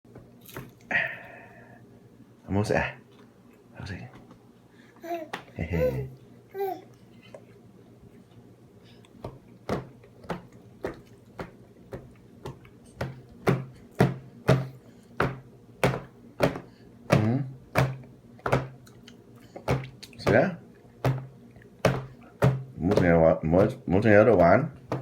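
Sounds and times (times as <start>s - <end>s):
knocking on a hard surface: 11.4s - 18.7s, 21.0s - 25.0s.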